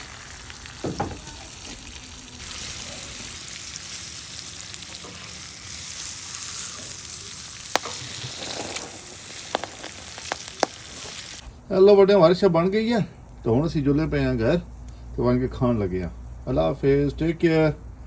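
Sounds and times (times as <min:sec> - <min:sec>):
fish sizzling in hot oil: 0:00.0 - 0:11.4.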